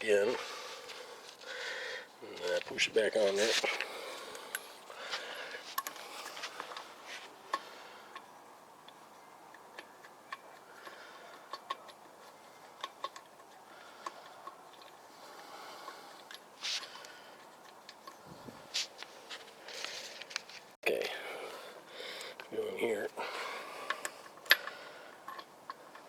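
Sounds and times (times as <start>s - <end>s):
metallic clicks of lug nuts: 7.5s - 18.2s, 23.8s - 26.0s.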